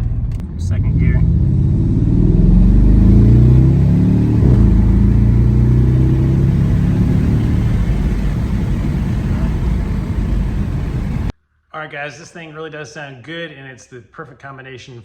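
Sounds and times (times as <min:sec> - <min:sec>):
car engine accelerating: 0:00.0 - 0:11.3.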